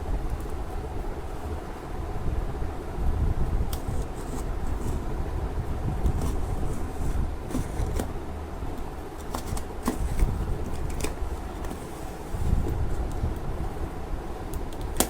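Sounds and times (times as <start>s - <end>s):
steady low hum: 0.0s - 15.0s
packaging rustling and crinkling: 6.0s - 8.2s, 9.1s - 13.2s.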